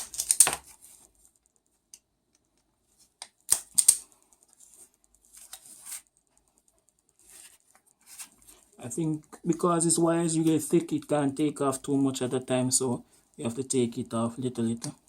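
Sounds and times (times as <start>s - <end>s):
wire stripper jaws clicking: 3.2s - 4.1s.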